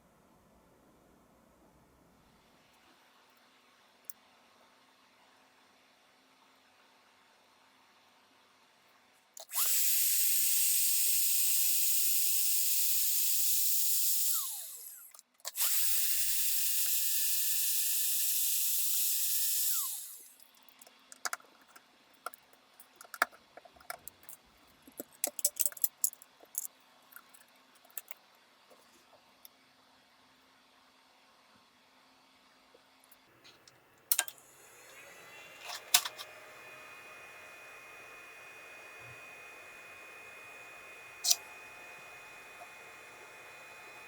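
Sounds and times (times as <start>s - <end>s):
high-speed electric motor tool whine: 9.5s - 20.4s, 34.5s - 44.0s.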